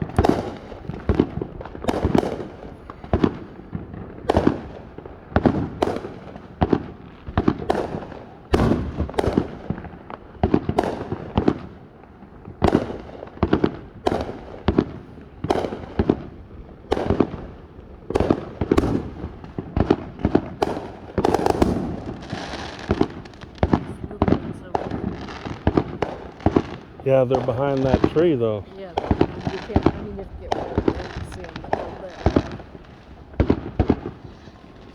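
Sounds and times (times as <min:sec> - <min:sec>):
fireworks bangs: 0:00.0 - 0:34.9
hissing crackle: 0:18.3 - 0:34.9.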